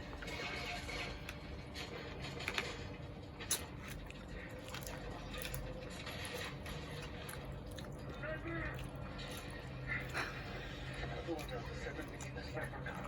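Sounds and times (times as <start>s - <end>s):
faint eating noises: 0.0s - 13.0s
low room hum: 0.0s - 13.0s.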